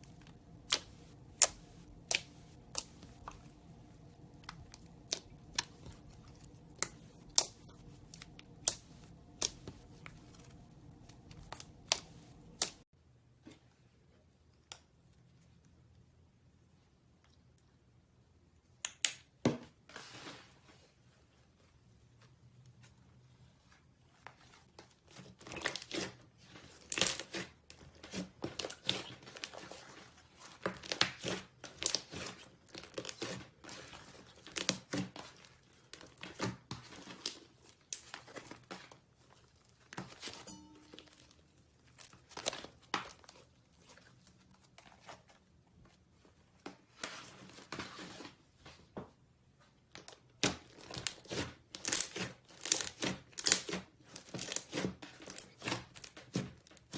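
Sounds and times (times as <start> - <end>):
slime crackling and popping: 0.0 - 12.8, 50.4 - 56.9.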